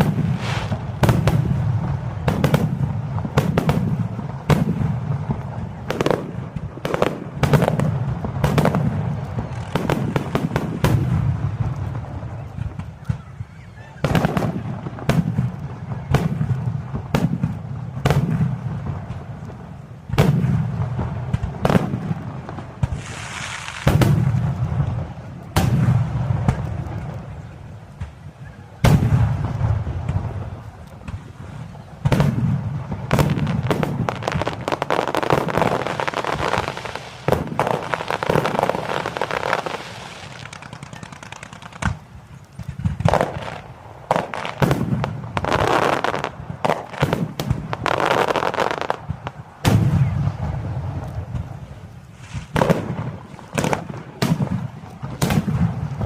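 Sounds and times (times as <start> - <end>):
firework shells bursting: 0.0 - 3.9, 28.8 - 50.1
firework crackling: 0.0 - 56.0.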